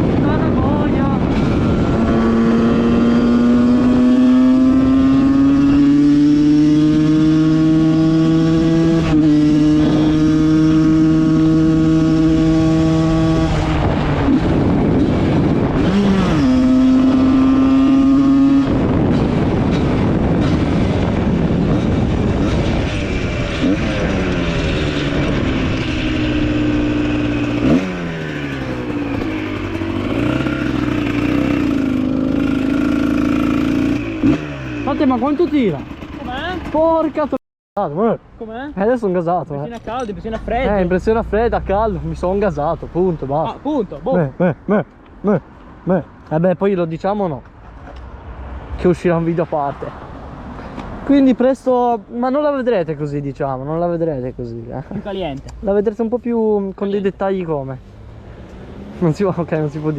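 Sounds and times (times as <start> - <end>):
car engine revving through gears: 1.4 - 35.0, 58.0 - 59.9.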